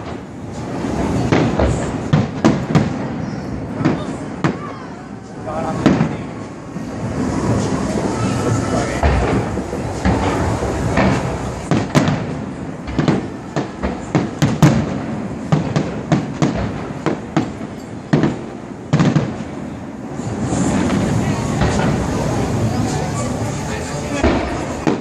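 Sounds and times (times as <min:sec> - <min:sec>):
fireworks bangs and cracks: 0:00.0 - 0:25.0
steady background noise: 0:00.0 - 0:25.0.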